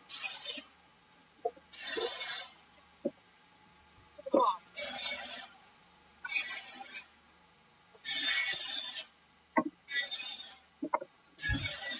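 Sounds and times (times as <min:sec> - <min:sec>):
rasping scraping strokes: 0:11.4 - 0:11.9.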